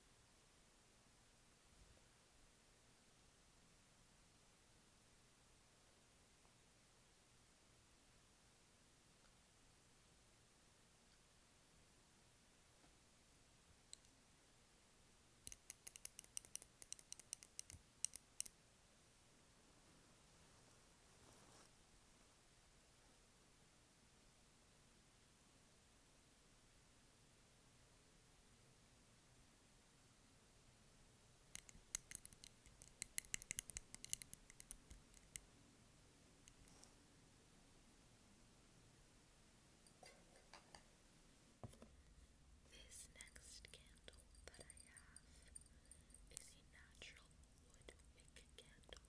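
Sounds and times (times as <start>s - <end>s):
light tapping on a candle: 31.6s - 35.5s.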